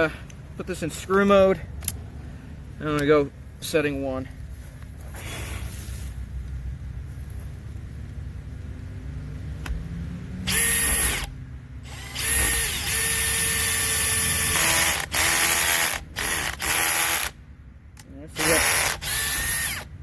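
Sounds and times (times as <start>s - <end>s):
drill bit chattering: 10.5s - 11.3s, 11.9s - 17.4s, 18.4s - 19.9s
drill driving screw into wood: 10.5s - 11.3s, 11.9s - 17.4s, 18.4s - 19.9s.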